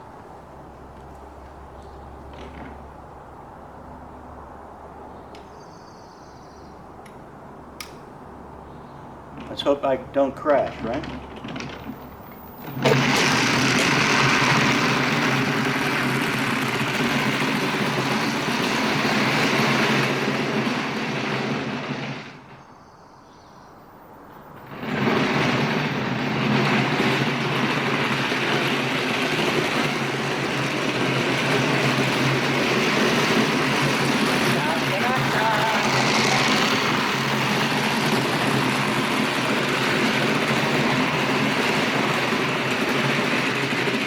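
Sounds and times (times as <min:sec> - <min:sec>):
casters screaming on pavement: 0:24.7 - 0:44.0.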